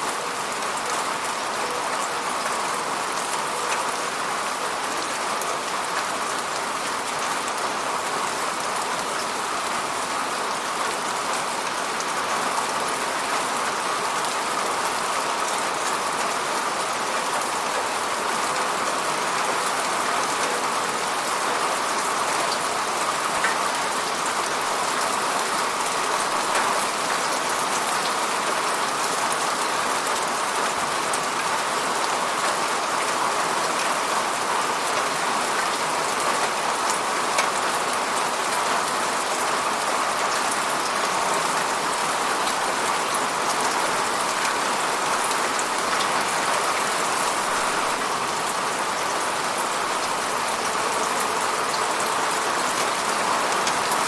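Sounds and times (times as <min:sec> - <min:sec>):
steady falling rain: 0:00.0 - 0:54.0.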